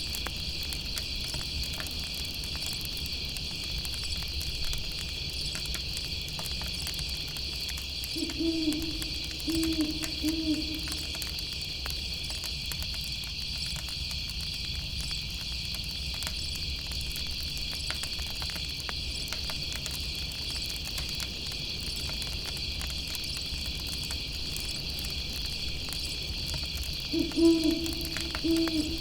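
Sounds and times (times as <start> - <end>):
night insects chirring: 0.0 - 29.0
campfire crackling: 17.4 - 29.0.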